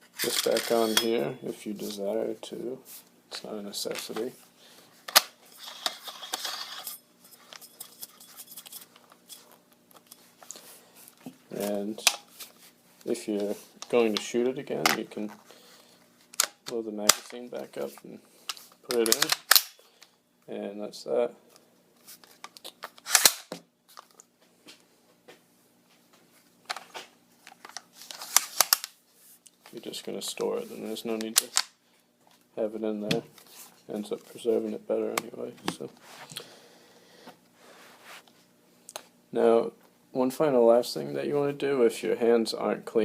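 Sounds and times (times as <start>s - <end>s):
metal parts scraping: 0.1s - 1.2s, 5.4s - 9.6s
metal gun parts clicking: 18.9s - 19.8s, 23.1s - 23.5s.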